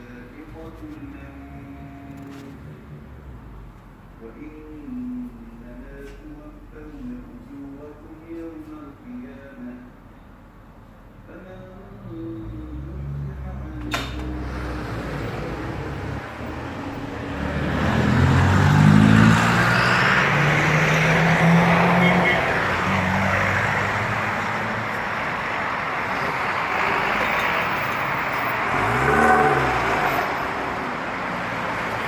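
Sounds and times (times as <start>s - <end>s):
traffic noise: 0.0s - 32.0s
vehicle passing: 11.9s - 32.0s
vehicle engine speeding up: 12.5s - 32.0s.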